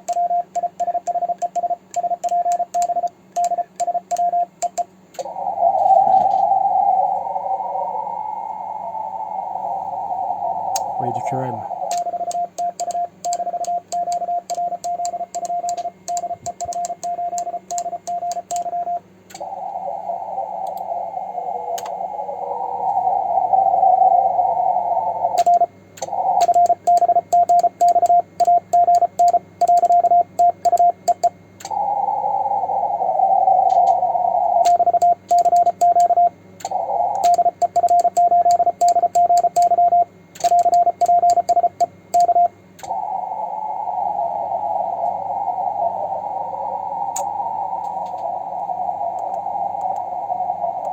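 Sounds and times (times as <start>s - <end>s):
morse code beeps: 0.0s - 4.9s, 11.1s - 19.0s, 26.4s - 31.4s, 34.7s - 36.3s, 37.1s - 42.5s
radio band hiss: 10.7s - 12.3s.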